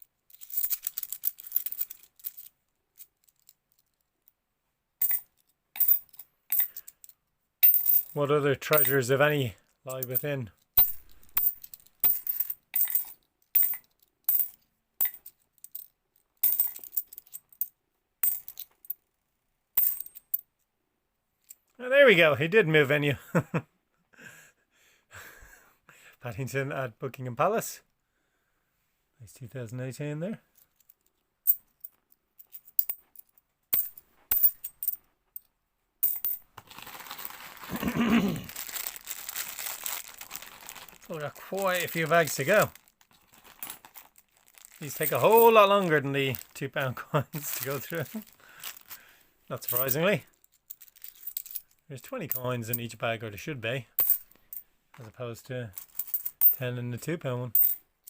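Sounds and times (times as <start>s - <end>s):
coins clinking: 0.3s - 2.5s, 5.0s - 7.0s, 7.6s - 9.1s, 10.8s - 15.8s, 16.4s - 19.0s, 19.8s - 20.4s, 32.4s - 33.2s, 33.8s - 35.0s, 36.0s - 46.6s, 47.4s - 49.0s, 49.6s - 50.0s, 50.6s - 51.7s, 54.0s - 54.6s, 55.8s - 56.6s, 57.6s - 57.8s
plastic bag crinkling: 36.6s - 46.6s, 47.4s - 49.0s.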